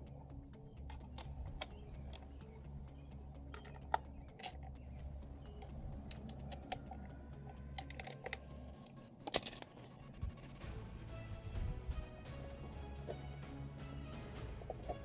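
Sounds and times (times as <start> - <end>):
low steady hum: 0.0 - 15.0
clicks and knocks of hand tools: 3.5 - 4.8, 5.5 - 8.5.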